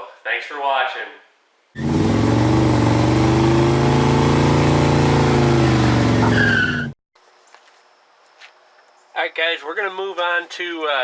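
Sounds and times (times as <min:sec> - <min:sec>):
car engine running: 0:01.8 - 0:06.9
tire squeal: 0:01.8 - 0:07.0.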